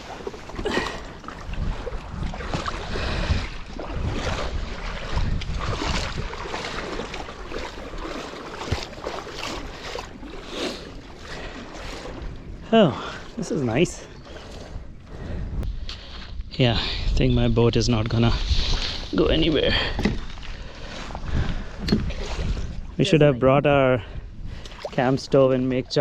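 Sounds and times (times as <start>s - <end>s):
shallow water splashing: 0.0s - 16.2s
wind rumbling on microphone: 0.0s - 26.0s.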